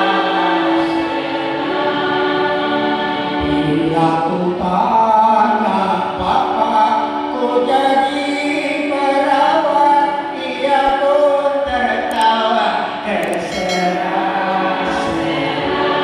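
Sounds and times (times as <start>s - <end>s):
choir singing long notes: 0.0s - 5.1s, 13.2s - 16.0s.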